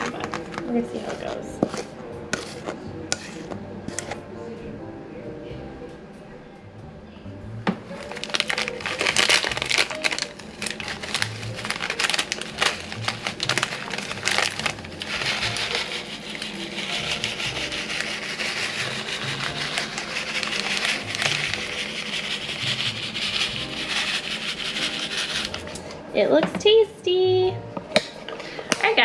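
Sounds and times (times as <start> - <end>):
spatula spreading frosting: 0.0 - 4.2, 8.0 - 25.9.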